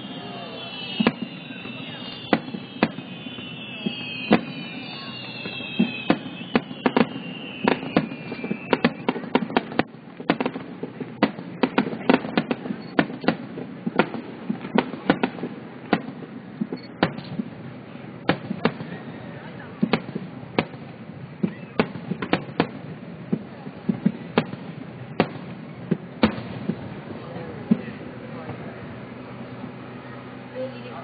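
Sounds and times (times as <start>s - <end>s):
fireworks bursting with bangs: 0.0s - 31.0s.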